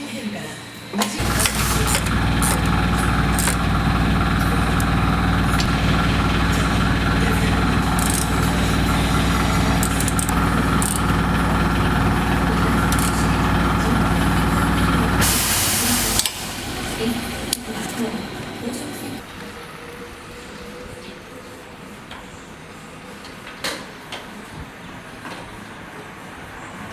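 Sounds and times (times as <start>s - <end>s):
motorcycle engine idling: 1.2s - 21.9s.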